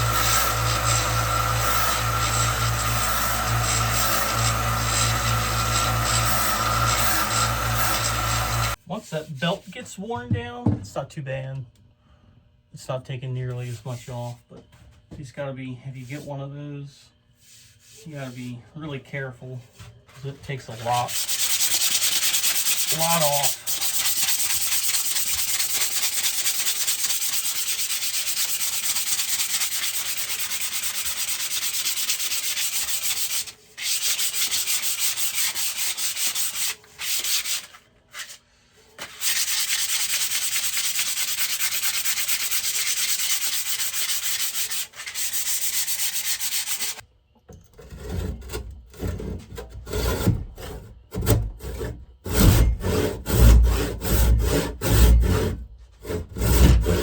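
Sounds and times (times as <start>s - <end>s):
belt sander grinding wood: 0.0s - 8.8s
scraping strokes on wood: 0.0s - 8.8s, 17.4s - 18.6s, 19.5s - 47.0s, 47.8s - 57.0s.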